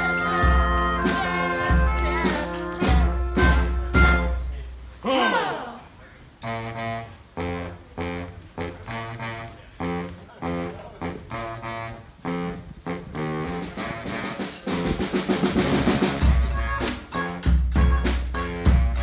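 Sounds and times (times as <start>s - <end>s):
snare drum roll: 0.0s - 4.6s, 13.5s - 19.0s
brass band horn chords: 0.0s - 5.0s, 6.4s - 19.0s
bass drum hits: 17.4s - 19.0s.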